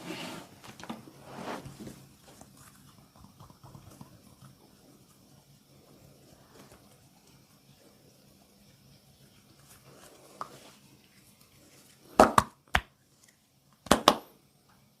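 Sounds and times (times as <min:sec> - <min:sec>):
hands slapping a body: 0:13.9 - 0:14.2.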